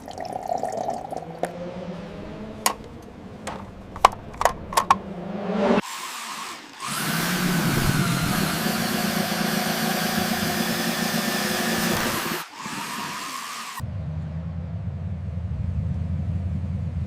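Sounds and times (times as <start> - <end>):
radio-controlled machine motor drone: 5.8 - 13.8.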